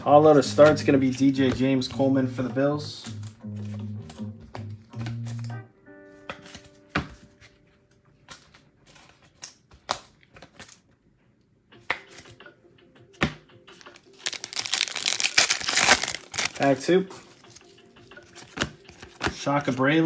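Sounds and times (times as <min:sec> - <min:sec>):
trading cards clicking and tapping: 0:00.5 - 0:05.5, 0:13.2 - 0:20.0
foil pack crinkling and tearing: 0:13.8 - 0:17.6.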